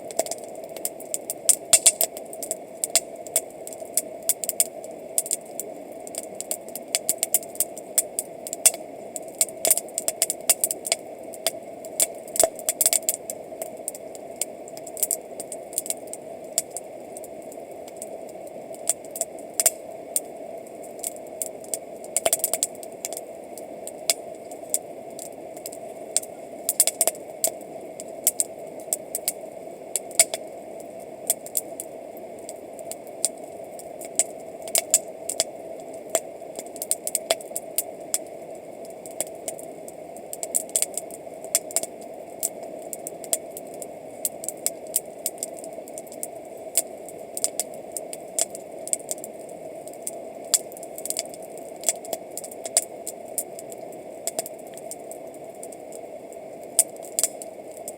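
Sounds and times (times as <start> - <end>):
campfire crackling and popping: 0.0 - 57.9.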